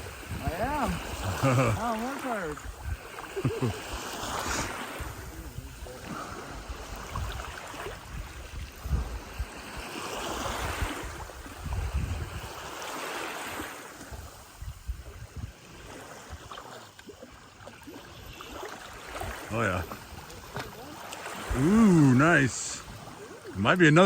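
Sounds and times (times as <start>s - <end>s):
wind rumbling on microphone: 0.0s - 16.8s
lake waves washing in: 0.0s - 24.0s.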